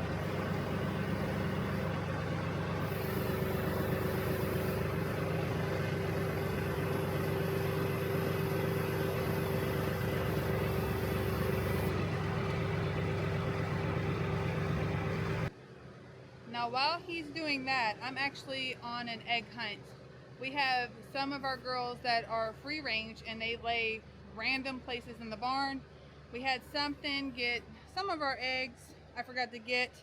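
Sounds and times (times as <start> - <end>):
steady whine: 0.0 - 15.5
tractor engine running: 0.0 - 15.5.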